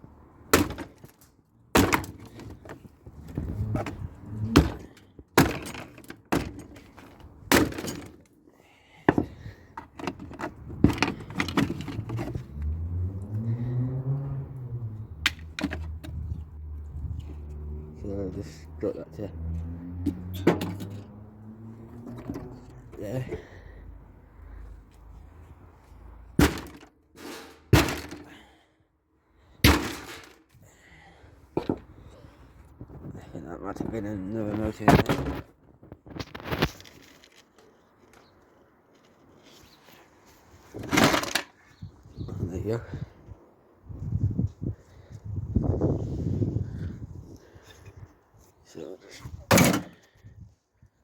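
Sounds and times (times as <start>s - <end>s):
metal knocks and clatter: 20.0s - 21.0s.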